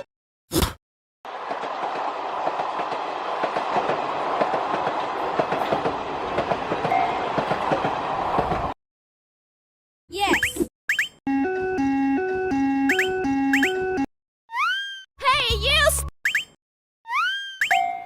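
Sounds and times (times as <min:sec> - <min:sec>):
train wheels clattering on rails: 0:01.3 - 0:08.8.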